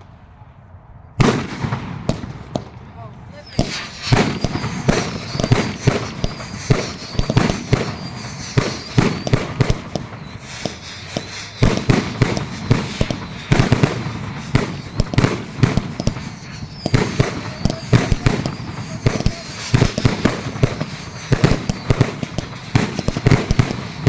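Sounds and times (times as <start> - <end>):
fireworks bangs and crackling: 1.2 - 24.0.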